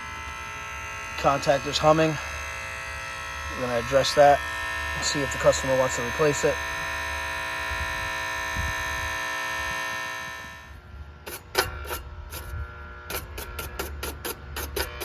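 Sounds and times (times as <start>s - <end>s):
contactor humming: 0.0s - 13.9s
short scraping strokes: 11.2s - 15.0s.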